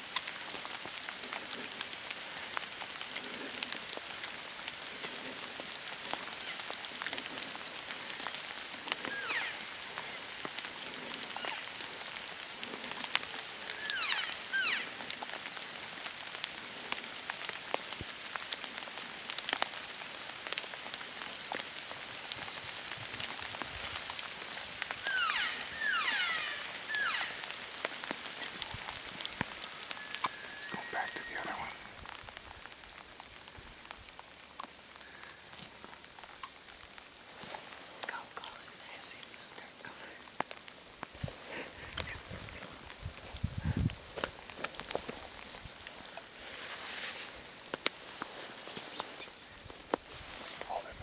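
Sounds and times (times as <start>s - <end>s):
crackling patter of ticks: 0.0s - 51.0s
falling bird chirps: 25.0s - 27.5s.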